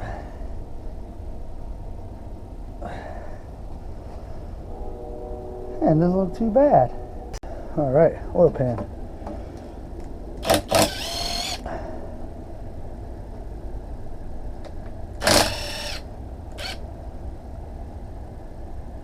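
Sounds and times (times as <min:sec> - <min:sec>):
power tool whining bursts: 0:10.4 - 0:11.6, 0:15.2 - 0:16.8.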